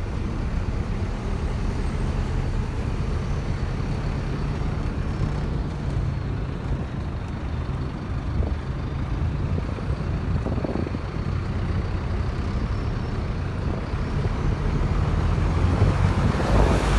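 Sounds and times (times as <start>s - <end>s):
bus engine running: 0.0s - 16.9s
street traffic noise: 0.0s - 16.9s.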